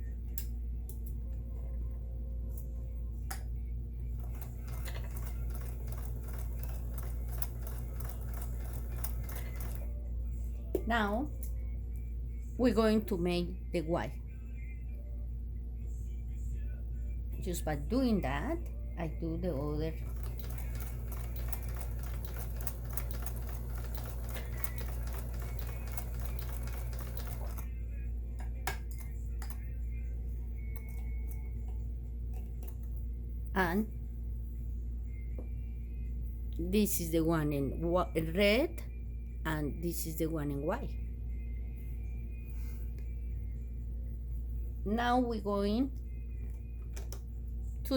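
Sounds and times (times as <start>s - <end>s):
sewing machine needle clicking: 4.2s - 9.8s, 20.0s - 27.6s
sewing machine motor hum: 4.2s - 10.0s, 19.8s - 27.7s.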